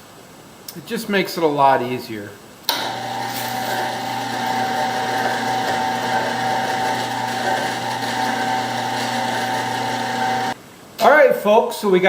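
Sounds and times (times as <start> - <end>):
winch motor whining: 2.7 - 10.6.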